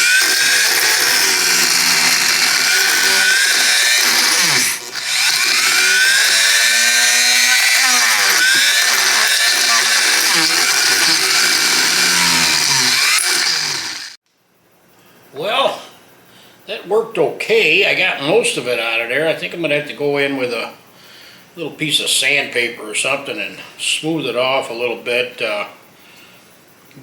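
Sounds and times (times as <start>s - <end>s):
rotary tool grinding bone: 0.0s - 14.2s.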